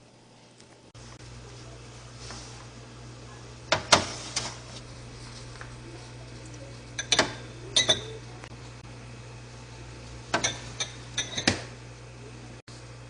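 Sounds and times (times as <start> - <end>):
steady low hum: 0.0 - 13.0
kitchen containers clinking: 6.4 - 8.2, 10.3 - 11.7.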